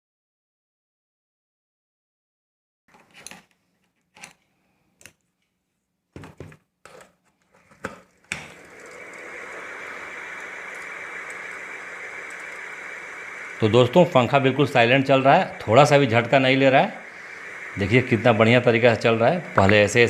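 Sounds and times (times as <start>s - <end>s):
ceiling fan whoosh: 8.5s - 20.0s.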